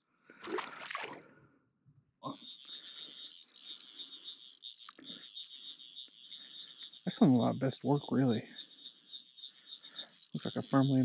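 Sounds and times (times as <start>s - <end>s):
water splash: 0.4s - 1.3s
high-pitched insect chorus: 2.2s - 11.0s.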